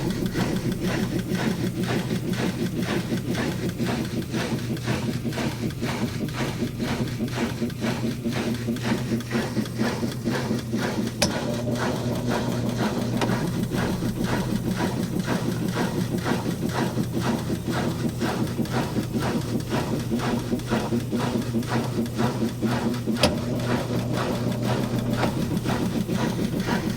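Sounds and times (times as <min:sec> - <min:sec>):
washing machine rhythmic clatter: 0:00.0 - 0:26.9.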